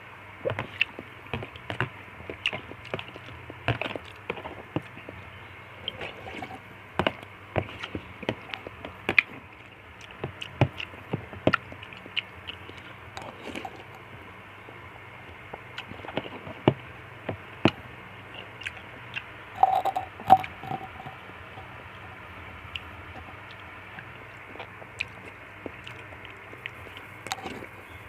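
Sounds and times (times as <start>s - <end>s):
chewing and squishing: 0.4s - 5.2s, 5.8s - 14.2s, 18.3s - 21.2s, 22.7s - 28.0s
spoon scraping a bowl: 6.0s - 6.6s, 13.2s - 14.0s, 19.6s - 22.2s, 27.3s - 27.7s.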